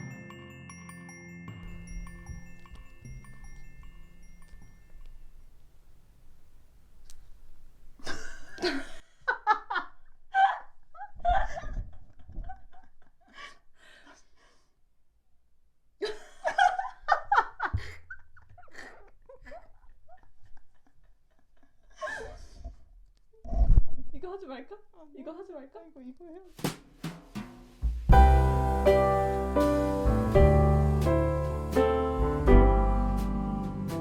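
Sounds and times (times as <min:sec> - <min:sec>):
low thumps: 0:01.5 - 0:03.6, 0:26.6 - 0:34.0
person laughing: 0:08.0 - 0:13.5.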